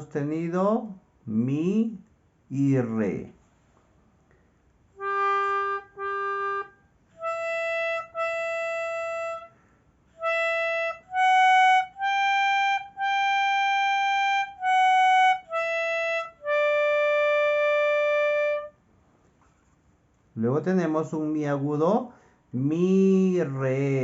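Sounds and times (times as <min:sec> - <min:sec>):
melodica notes: 0:05.0 - 0:09.6, 0:10.2 - 0:18.8.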